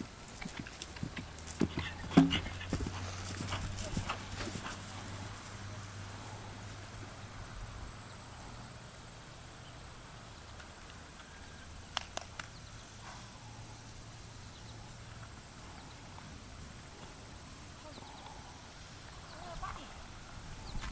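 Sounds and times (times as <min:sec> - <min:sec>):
sharp clicks: 0:11.9 - 0:12.6.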